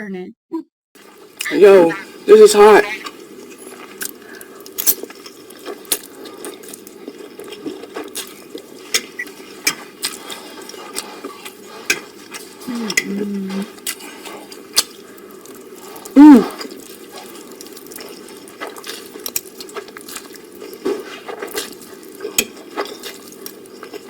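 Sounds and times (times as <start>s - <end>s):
utensils clinking against dishes: 4.8s - 5.4s, 20.8s - 24.0s.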